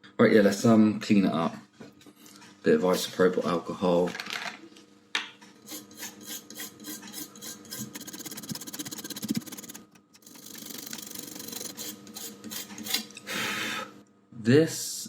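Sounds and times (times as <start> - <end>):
scrubbing circuit board: 5.7 - 12.8.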